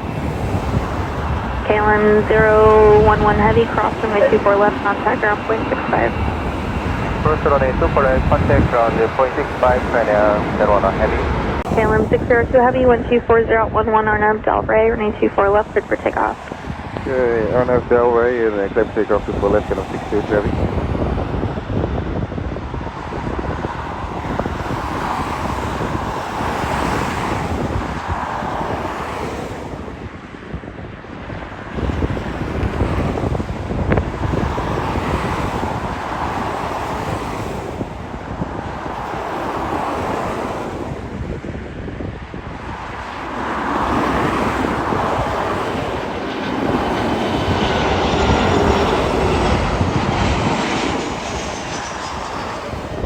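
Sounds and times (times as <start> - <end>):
faint rising engine whine: 0.0 - 21.8, 42.6 - 53.0
jet engines roaring at takeoff: 0.0 - 53.0.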